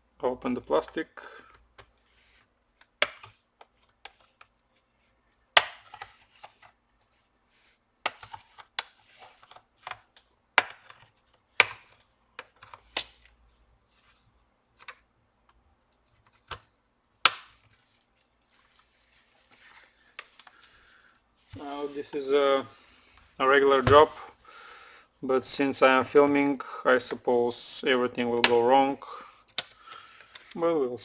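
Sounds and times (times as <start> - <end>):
plastic clips snapping loose: 17.2 - 17.6.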